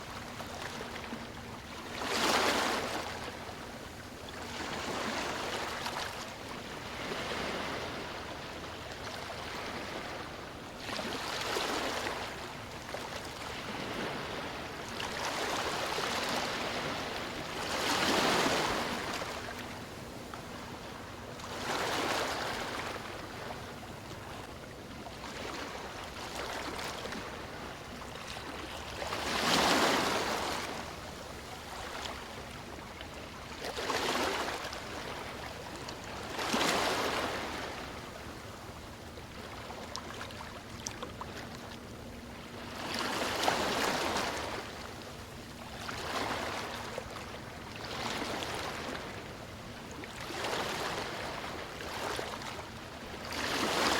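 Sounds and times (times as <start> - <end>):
sea waves breaking on beach: 6.8 - 8.5, 13.2 - 20.8, 28.3 - 32.2, 53.2 - 53.9.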